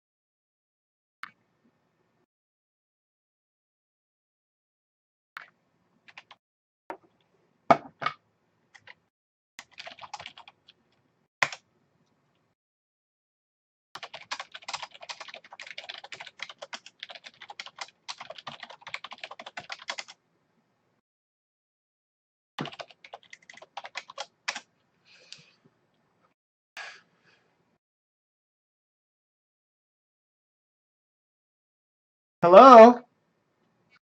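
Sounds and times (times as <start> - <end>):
typing on computer keyboard: 9.6 - 10.8, 14.0 - 20.2, 22.6 - 24.6.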